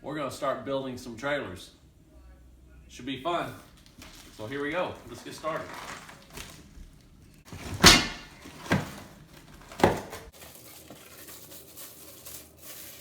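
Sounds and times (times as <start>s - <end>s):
cardboard rustling and handling: 3.4s - 13.0s
cardboard box tearing: 3.5s - 13.0s.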